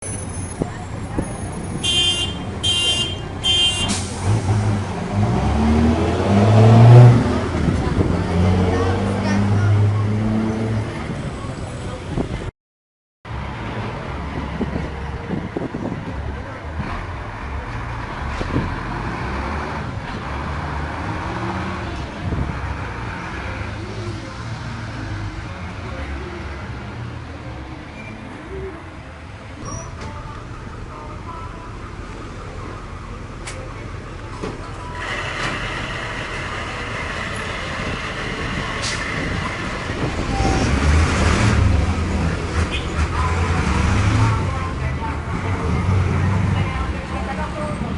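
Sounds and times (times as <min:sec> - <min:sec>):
bus engine rumbling: 0:00.0 - 0:12.5, 0:13.3 - 0:47.9
diesel engine running: 0:28.4 - 0:47.9.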